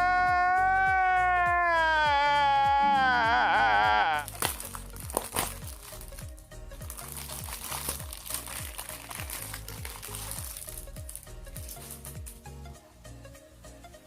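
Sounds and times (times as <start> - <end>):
electronic music with bass beat: 0.0 - 14.0
plastic packaging crinkling: 4.2 - 12.2.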